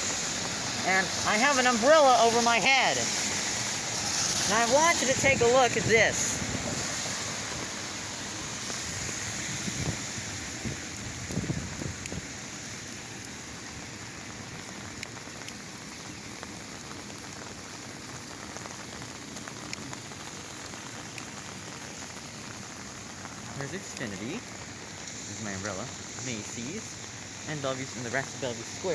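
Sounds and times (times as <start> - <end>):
heavy rain falling: 0.0 - 28.9
raindrops ticking on umbrella: 0.0 - 28.9.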